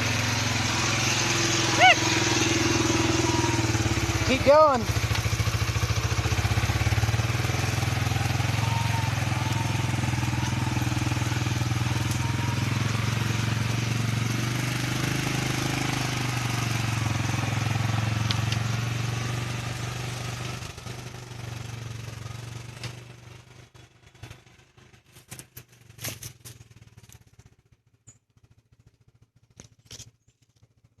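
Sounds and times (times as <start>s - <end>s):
vehicle engine running: 0.0s - 31.0s.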